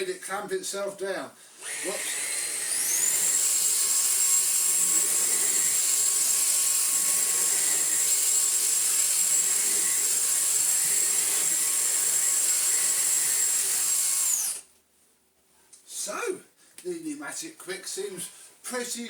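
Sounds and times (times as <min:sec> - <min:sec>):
stick vacuum motor whine: 0:01.6 - 0:14.6.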